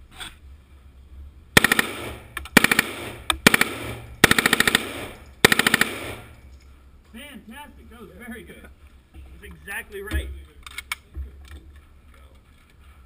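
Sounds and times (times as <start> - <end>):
submachine gun bursts: 1.6 - 6.4.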